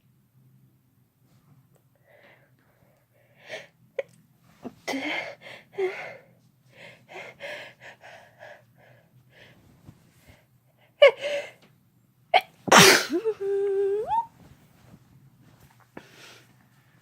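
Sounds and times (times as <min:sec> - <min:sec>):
person sneezing: 0:12.4 - 0:14.3.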